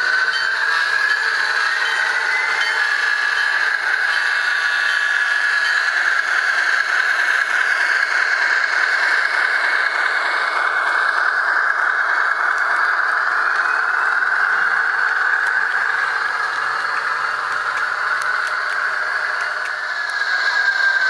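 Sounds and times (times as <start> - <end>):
tinny diesel engine sound from speaker: 0.0 - 21.0.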